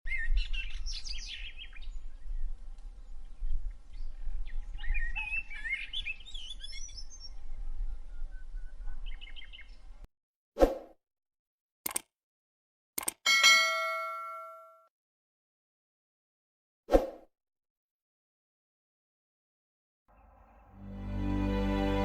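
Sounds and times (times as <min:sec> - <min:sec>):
low wind rumble: 0:00.1 - 0:10.0
small birds chirping: 0:00.1 - 0:10.1.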